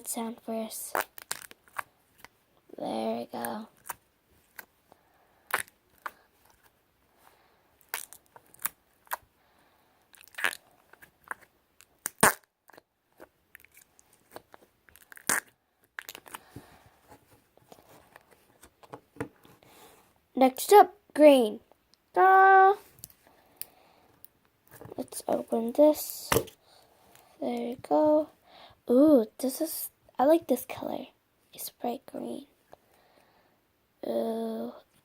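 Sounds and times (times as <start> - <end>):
soft handling noise: 16.2 - 20.1, 24.2 - 28.0.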